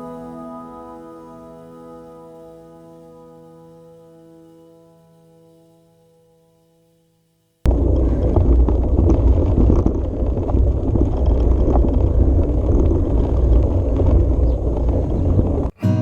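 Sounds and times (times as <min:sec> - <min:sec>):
bicycle tyres rumbling on rough ground: 0:07.7 - 0:15.8
wind buffeting microphone: 0:07.7 - 0:15.8.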